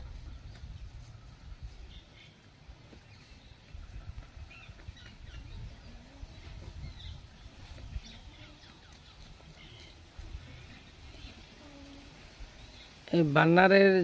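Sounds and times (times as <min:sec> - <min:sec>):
small birds chirping: 0:00.0 - 0:13.6.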